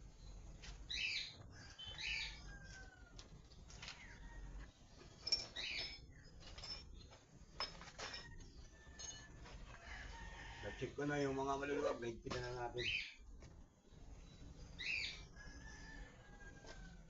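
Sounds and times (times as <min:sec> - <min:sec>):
birds calling: 0:00.0 - 0:03.0, 0:12.6 - 0:13.3, 0:14.1 - 0:16.2.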